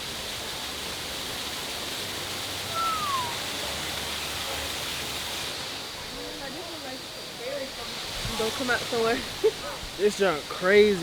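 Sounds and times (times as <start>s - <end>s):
waterfall rushing: 0.0s - 6.2s
whistle-like gliding note: 2.7s - 3.5s.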